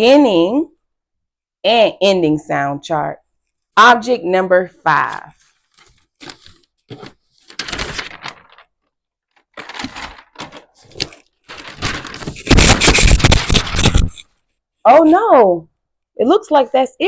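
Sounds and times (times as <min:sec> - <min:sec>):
hands rummaging through a box: 0:05.6 - 0:08.7, 0:09.4 - 0:14.2
rustling and clattering: 0:05.7 - 0:14.3.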